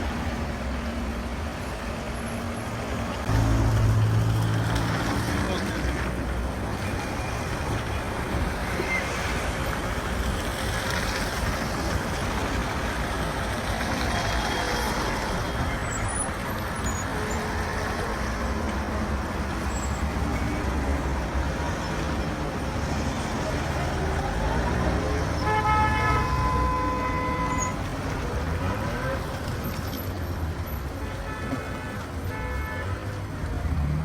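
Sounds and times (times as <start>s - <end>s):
tyres on road: 0.0s - 34.0s
vehicle engines: 0.0s - 34.0s.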